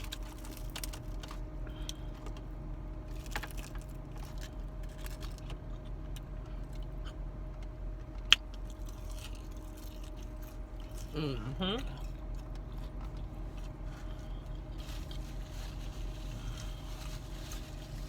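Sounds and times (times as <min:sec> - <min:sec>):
steady low hum: 0:00.0 - 0:18.0
chewing and food handling clicks: 0:03.3 - 0:11.1, 0:11.8 - 0:13.8.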